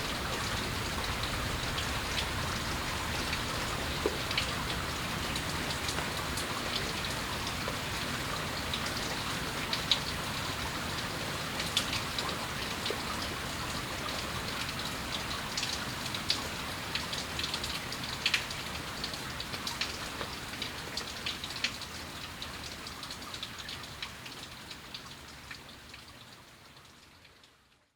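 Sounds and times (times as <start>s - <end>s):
steady rain falling: 0.0s - 27.9s.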